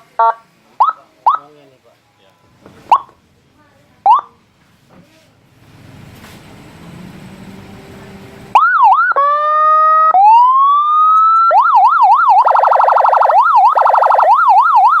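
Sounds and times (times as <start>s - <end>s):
electronic police siren: 0.0s - 1.5s, 2.9s - 3.1s, 4.1s - 4.3s, 8.5s - 15.0s.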